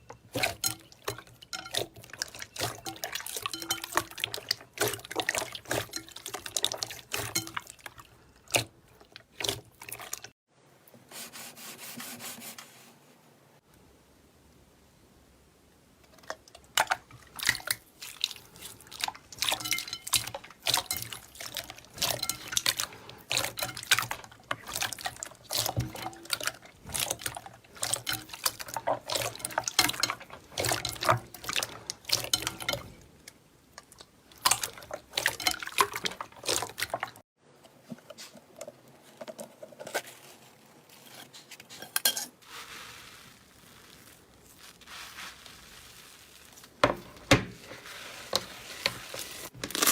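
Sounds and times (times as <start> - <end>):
slime squelching by hand: 0.0 - 10.3, 16.3 - 33.1, 33.8 - 37.2, 42.4 - 49.9
soft hiss: 42.4 - 46.9.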